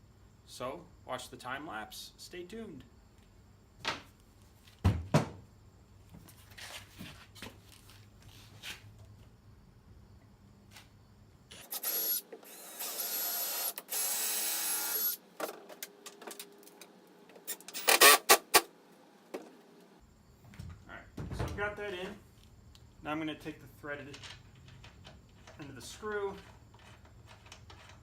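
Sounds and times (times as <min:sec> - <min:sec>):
power tool whining: 0:11.5 - 0:15.2, 0:17.5 - 0:18.7.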